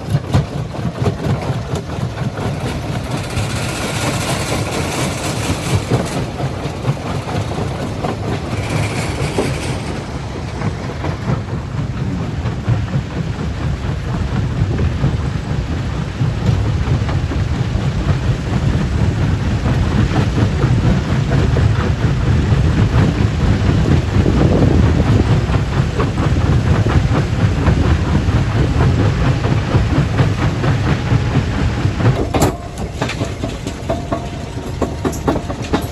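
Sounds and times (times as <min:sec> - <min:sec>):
stone crusher rumbling: 0:00.9 - 0:10.8, 0:23.0 - 0:35.9
rocks rattling and clattering: 0:24.3 - 0:35.9.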